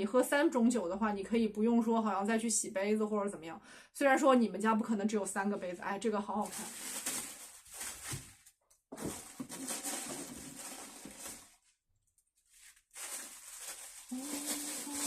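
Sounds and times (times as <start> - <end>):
packaging rustling and crinkling: 6.4 - 11.7, 12.4 - 15.0.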